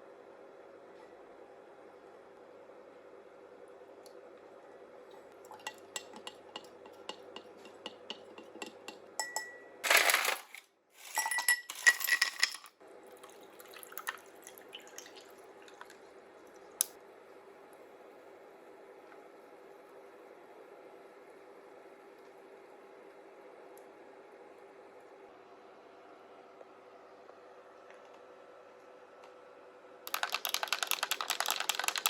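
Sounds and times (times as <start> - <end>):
dishes and utensils clinking: 5.5 - 12.7.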